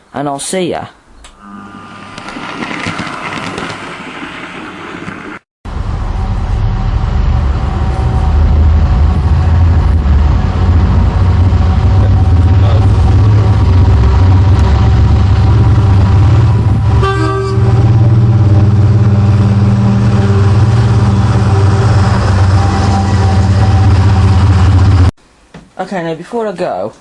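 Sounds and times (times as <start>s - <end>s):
diesel locomotive engine rumbling: 5.7s - 25.1s.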